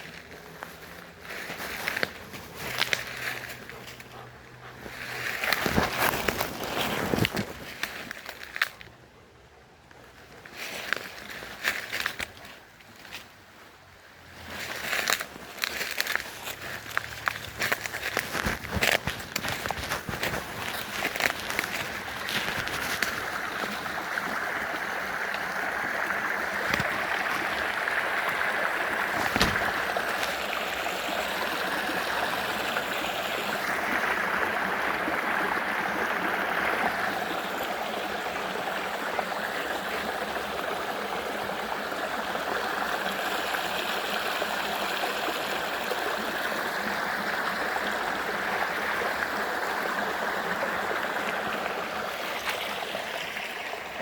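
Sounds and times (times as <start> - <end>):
running water rushing: 14.2 - 54.0.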